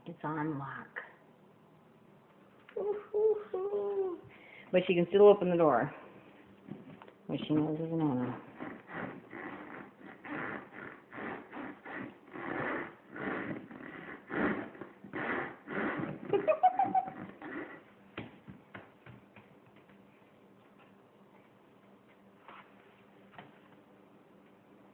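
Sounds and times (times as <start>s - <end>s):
girl laughing wheezily: 16.2s - 17.8s.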